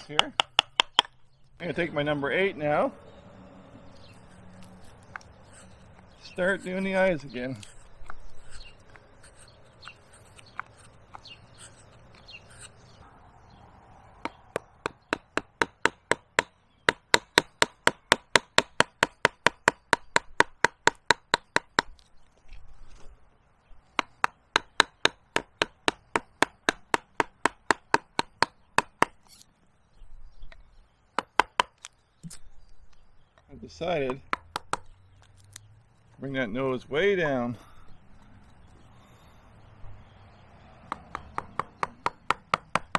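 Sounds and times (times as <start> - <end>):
mallet tapping gouge into wood: 0.0 - 1.2, 14.3 - 21.9, 24.0 - 29.2, 31.2 - 31.9, 34.1 - 34.9, 40.9 - 42.9.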